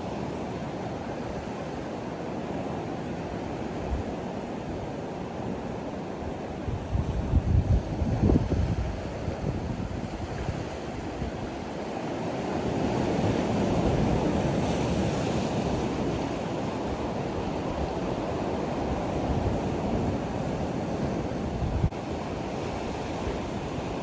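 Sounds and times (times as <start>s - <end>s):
wind buffeting microphone: 6.6s - 24.0s.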